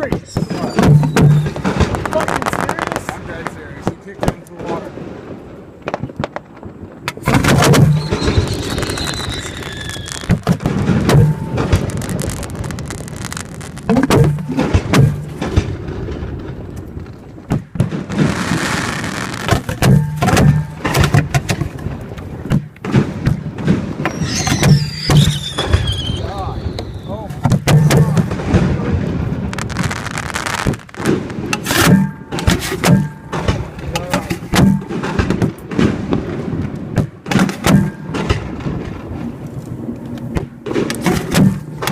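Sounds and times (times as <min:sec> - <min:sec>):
descending firework whistle: 0:00.0 - 0:01.8, 0:07.6 - 0:10.4, 0:24.0 - 0:27.4
firework launch thumps and bursts: 0:00.0 - 0:05.2, 0:05.8 - 0:39.4, 0:40.1 - 0:41.9.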